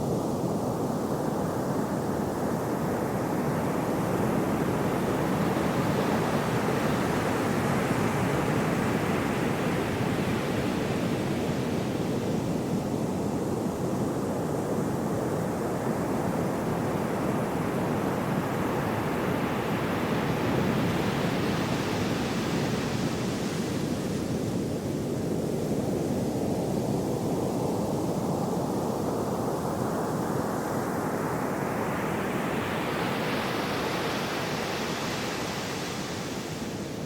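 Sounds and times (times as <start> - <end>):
sea waves washing in: 29.5 - 37.0.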